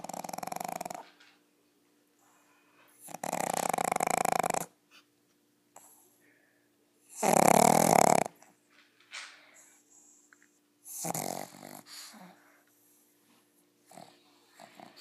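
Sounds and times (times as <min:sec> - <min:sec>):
dog snoring: 0:00.0 - 0:01.2, 0:03.0 - 0:04.8, 0:07.1 - 0:08.5, 0:09.6 - 0:12.6, 0:13.8 - 0:15.0.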